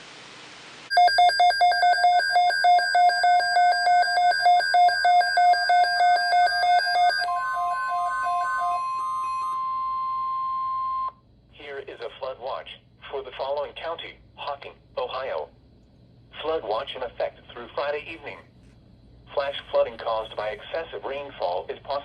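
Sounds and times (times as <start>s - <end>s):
steady warning alarm tone: 0.9s - 11.2s.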